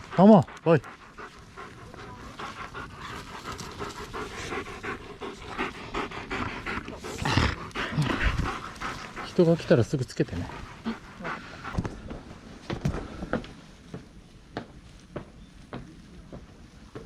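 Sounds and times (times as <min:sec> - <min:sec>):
dog panting: 0:00.0 - 0:12.7.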